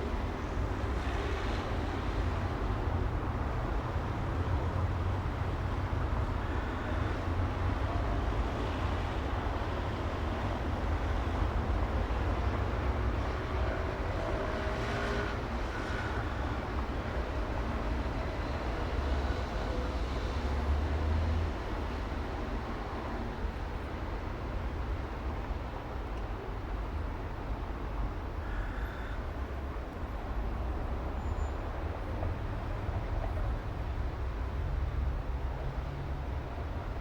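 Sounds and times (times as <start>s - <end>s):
vehicles rumbling past: 0.0s - 24.1s.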